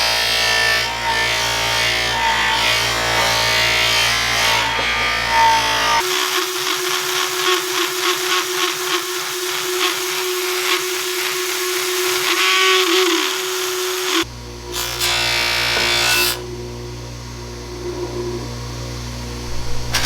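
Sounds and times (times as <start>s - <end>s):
rotary tool motor whining: 4.7s - 14.3s.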